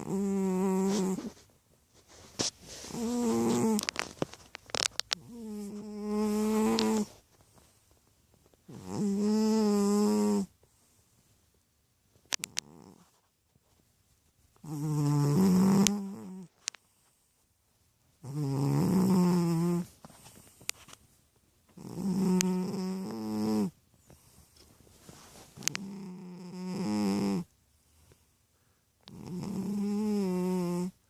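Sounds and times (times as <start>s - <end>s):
cat snoring: 0.0s - 1.4s, 2.8s - 4.0s, 5.1s - 7.1s, 8.7s - 10.5s, 12.3s - 13.1s, 14.6s - 16.5s, 18.2s - 20.0s, 21.8s - 23.8s, 25.6s - 27.5s, 29.0s - 31.0s.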